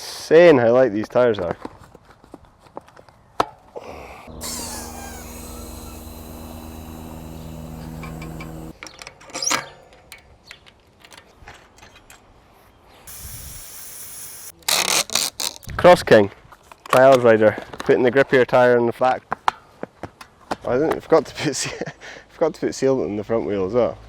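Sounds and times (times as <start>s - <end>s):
small motor humming: 4.3s - 8.8s, 13.1s - 14.5s.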